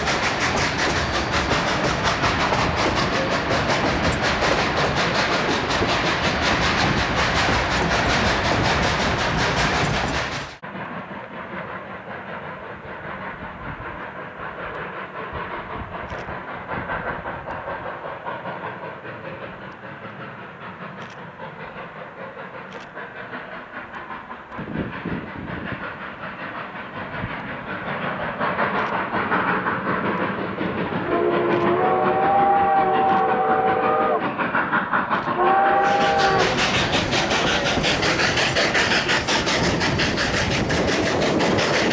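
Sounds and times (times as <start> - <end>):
wheels clattering on rail joints: 0.0 - 11.9
steam locomotive chime whistle: 31.1 - 34.2, 35.4 - 36.6.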